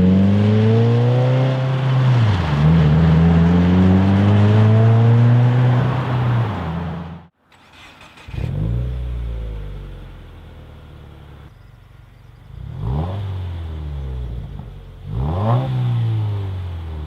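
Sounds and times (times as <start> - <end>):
car engine accelerating: 0.0 - 17.0.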